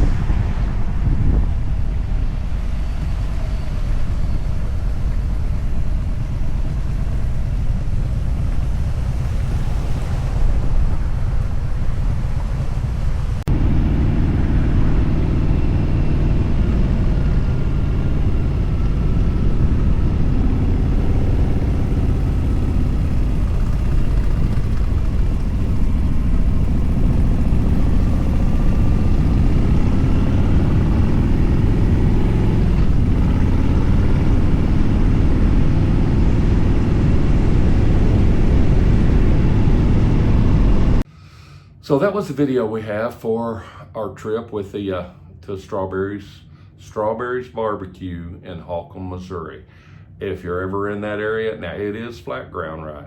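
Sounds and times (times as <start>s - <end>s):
motorcycle engine and road rumble: 0.0s - 41.1s
wind noise on microphone: 0.0s - 41.1s.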